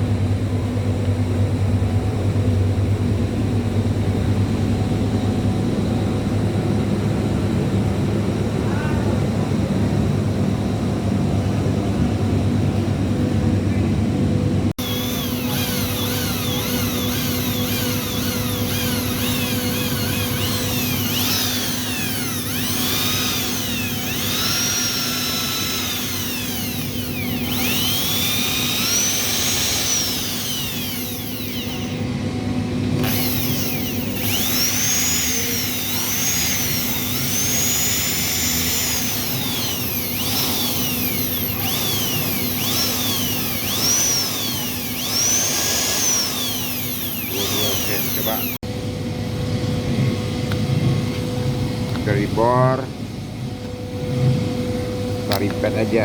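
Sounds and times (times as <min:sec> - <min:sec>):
steady low hum: 0:00.0 - 0:55.7
electric drill motor whine: 0:14.8 - 0:32.2, 0:32.9 - 0:48.6.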